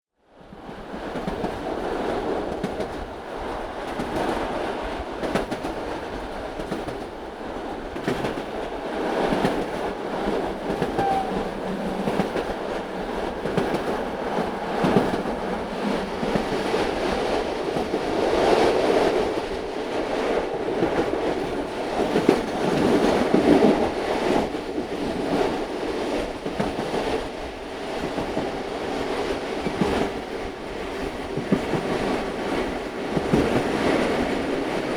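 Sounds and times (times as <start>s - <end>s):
train rumble: 0.5s - 34.9s
train wheels clacking: 8.0s - 19.4s.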